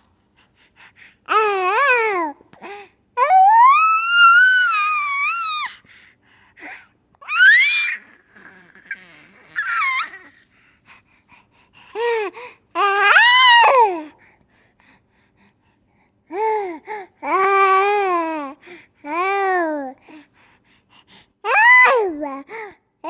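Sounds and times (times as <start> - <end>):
baby laughing and squealing: 7.3 - 10.4.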